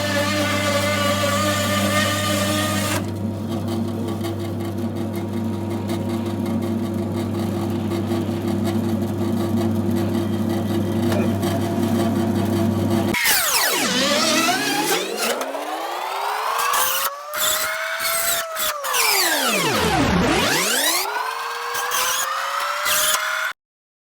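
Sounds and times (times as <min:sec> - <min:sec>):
motor winding down: 0:00.0 - 0:03.2, 0:04.9 - 0:23.6
band saw motor humming: 0:00.0 - 0:23.6.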